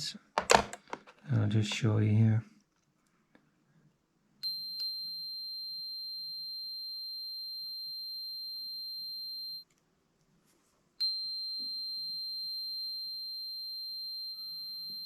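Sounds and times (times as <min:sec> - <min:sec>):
multimeter continuity beep: 0:04.4 - 0:09.6, 0:11.0 - 0:15.0.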